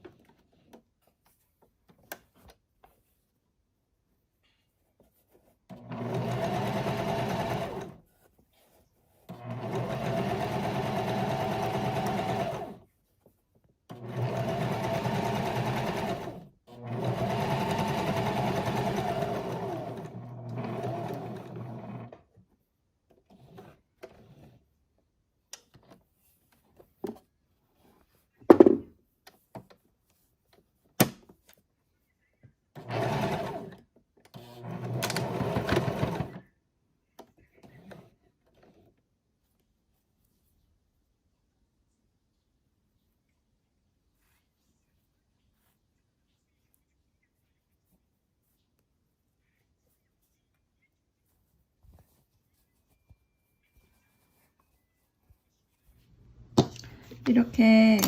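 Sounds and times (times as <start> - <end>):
electric sewing machine stitching: 5.7 - 8.0, 9.3 - 12.8, 13.9 - 22.2, 32.8 - 36.4
knock: 28.5 - 28.9.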